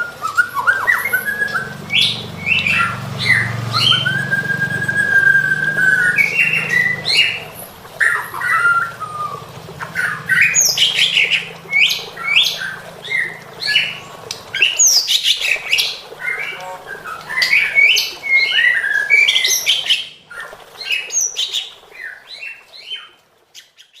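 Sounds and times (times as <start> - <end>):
bird singing varied whistled phrases: 0.0 - 24.0.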